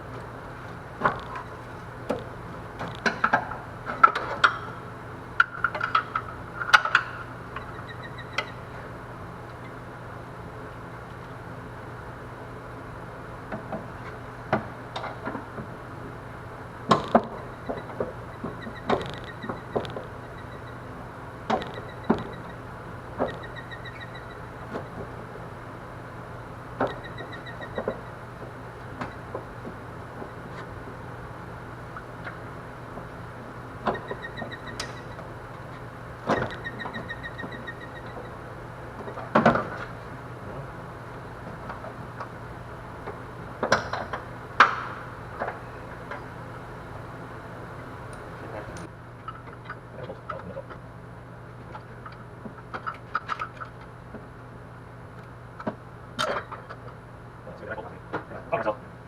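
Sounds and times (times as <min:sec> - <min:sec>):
steady low hum: 0:00.0 - 0:59.0
sharp knocks: 0:43.6 - 0:45.0.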